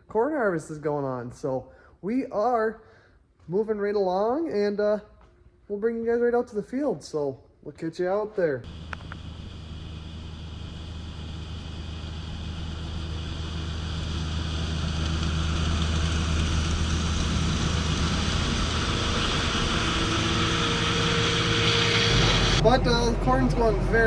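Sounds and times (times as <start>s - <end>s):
combine harvester engine drone: 8.7s - 24.0s.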